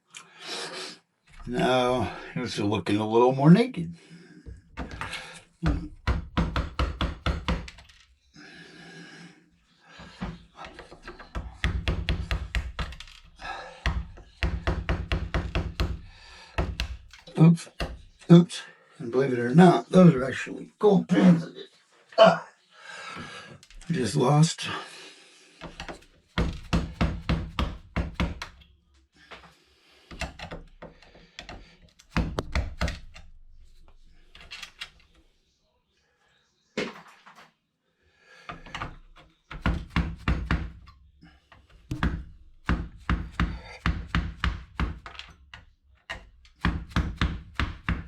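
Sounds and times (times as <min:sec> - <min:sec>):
hand tool knocking and clicking: 0:30.1 - 0:33.3, 0:41.9 - 0:48.0.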